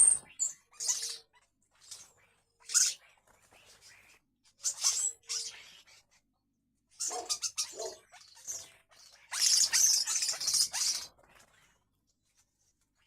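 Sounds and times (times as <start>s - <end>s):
birds squawking harshly: 7.0s - 11.2s.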